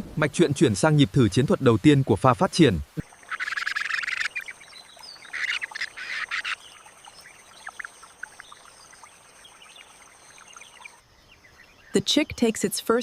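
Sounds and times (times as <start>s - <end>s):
bird chirping: 3.0s - 12.9s.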